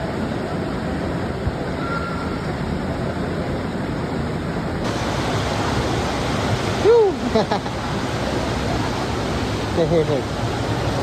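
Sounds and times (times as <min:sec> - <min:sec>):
rushing water roar: 0:00.0 - 0:11.0.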